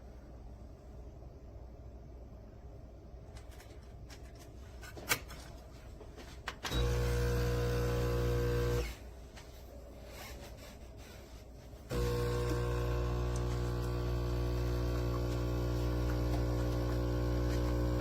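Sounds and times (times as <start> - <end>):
espresso machine pump buzzing: 6.7 - 9.0, 11.9 - 18.0.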